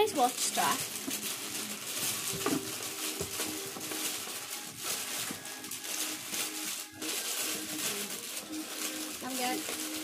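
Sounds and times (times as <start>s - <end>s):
busy indoor room hiss: 0.0s - 10.0s.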